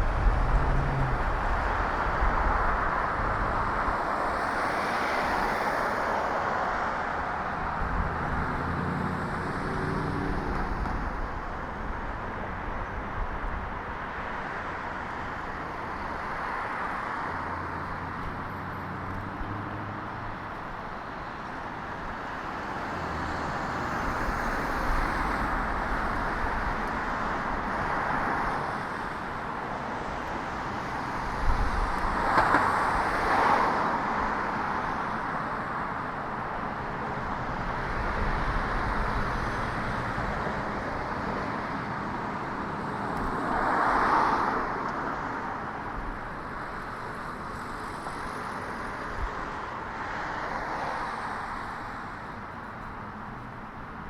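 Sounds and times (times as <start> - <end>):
low engine hum: 0.0 - 4.1
cars passing with tyre noise: 0.0 - 54.0.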